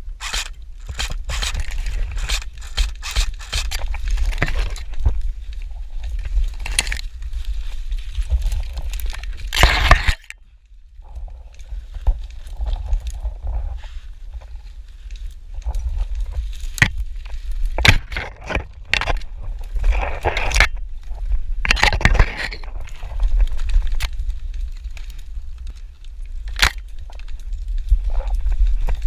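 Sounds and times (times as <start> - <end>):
brush and twigs scraping: 0.0 - 29.0
low rumble on microphone: 0.0 - 29.0.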